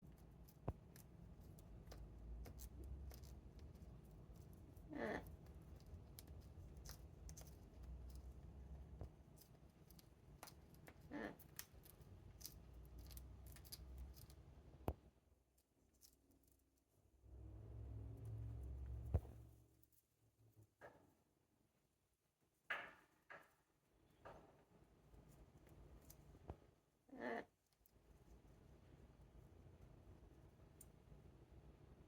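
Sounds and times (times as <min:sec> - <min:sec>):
parrot chewing on toy: 0:00.1 - 0:14.5
soft wavering bird vocal noises: 0:04.7 - 0:05.8, 0:10.8 - 0:13.8.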